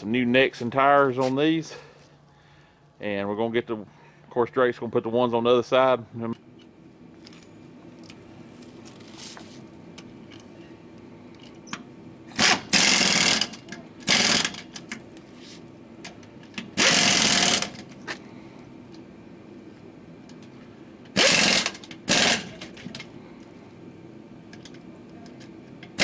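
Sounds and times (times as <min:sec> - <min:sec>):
impact wrench rattling: 0:12.4 - 0:15.0, 0:16.6 - 0:17.9, 0:21.1 - 0:23.1.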